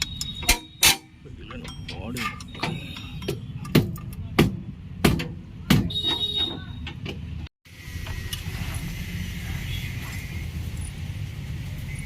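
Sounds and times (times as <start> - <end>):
sharp metal knocks: 0.0 - 6.3.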